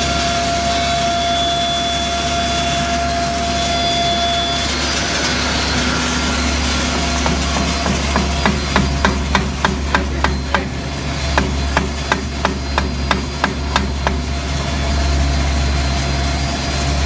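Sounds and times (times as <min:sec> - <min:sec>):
grinding mill humming: 0:00.0 - 0:17.0
sharp evenly spaced knocks: 0:05.9 - 0:14.6.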